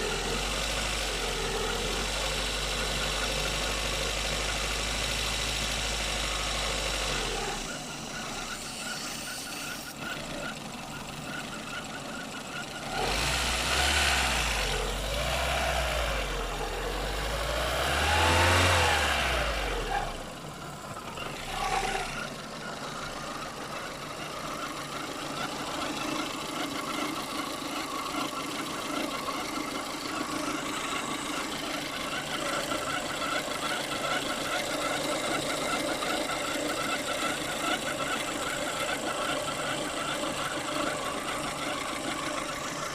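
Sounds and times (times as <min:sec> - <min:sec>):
car engine running: 0:00.0 - 0:42.9
squeak: 0:07.6 - 0:12.8.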